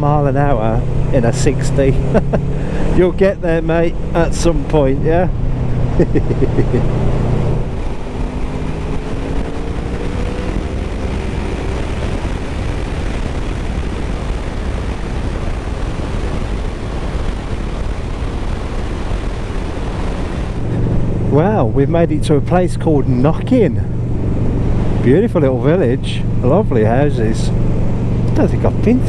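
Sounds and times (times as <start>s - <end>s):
motorcycle engine running: 0.0s - 29.0s
wind noise: 0.0s - 29.0s.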